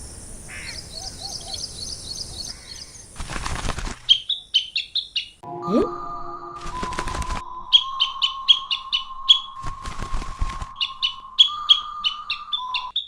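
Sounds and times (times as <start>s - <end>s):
small bird chirping: 0.0s - 3.2s, 4.0s - 5.4s, 7.7s - 9.8s, 10.7s - 13.0s
rustling noise bursts: 3.2s - 4.1s, 6.6s - 7.4s, 9.6s - 11.0s
steady high tone: 5.4s - 13.0s.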